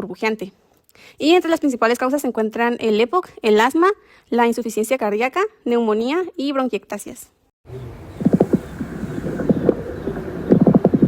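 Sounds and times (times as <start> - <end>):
low breath noise: 7.7 - 10.5
lung crackles: 7.7 - 11.0.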